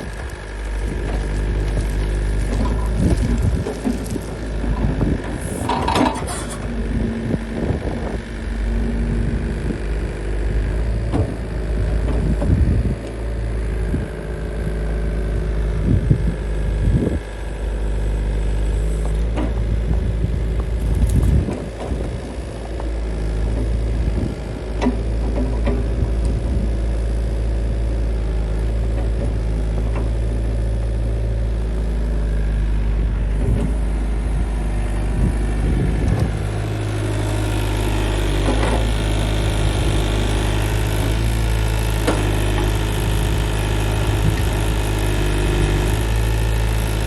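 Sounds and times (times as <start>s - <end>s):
excavator diesel engine running: 0.0s - 47.0s
high screech: 5.4s - 6.7s.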